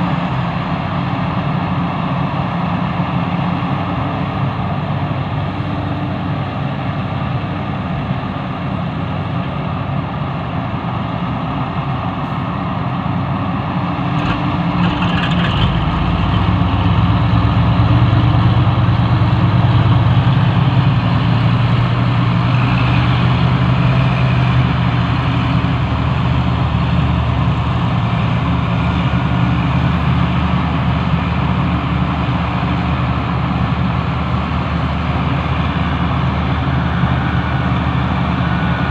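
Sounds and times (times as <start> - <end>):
excavator diesel engine running: 0.0 - 38.9.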